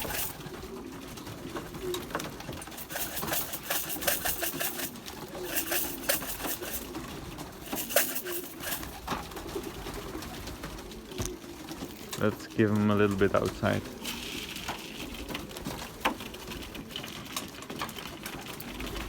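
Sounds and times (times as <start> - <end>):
scratchy rustling and clicks: 0.0 - 0.5, 2.6 - 7.0, 7.6 - 9.1
pigeons cooing: 0.0 - 19.0.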